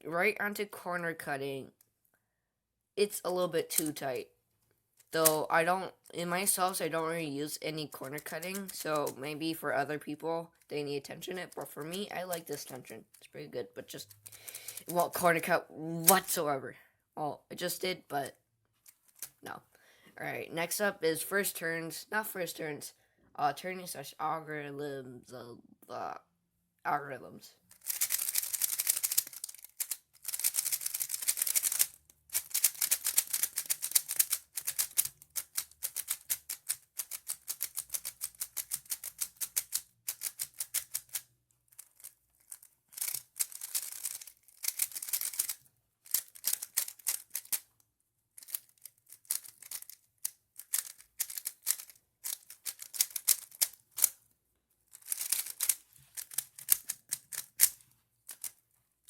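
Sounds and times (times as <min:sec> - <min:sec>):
puzzle cube plastic clicking: 0:05.0 - 0:05.5, 0:07.9 - 0:09.2, 0:11.5 - 0:12.7, 0:14.0 - 0:15.4, 0:27.7 - 0:47.8, 0:48.4 - 0:54.2, 0:54.9 - 0:58.6.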